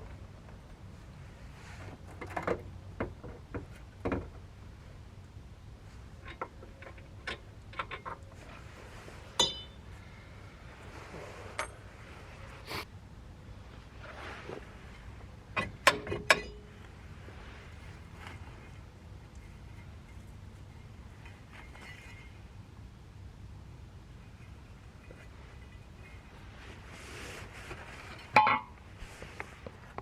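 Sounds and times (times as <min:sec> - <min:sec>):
metal tools clinking and knocking: 0:09.4 - 0:09.9, 0:15.6 - 0:16.8, 0:28.3 - 0:28.8.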